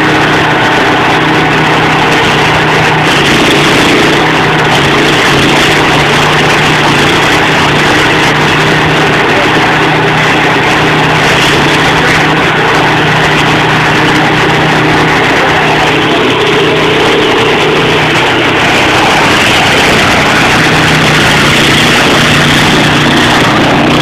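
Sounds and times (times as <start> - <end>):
stump grinder engine drone: 0.0 - 24.0.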